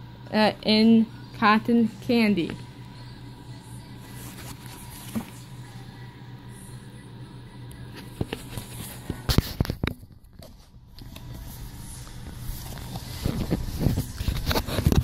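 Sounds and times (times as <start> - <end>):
steady low hum: 0.0 - 15.0
paper booklet rustling and clicking: 4.1 - 5.4.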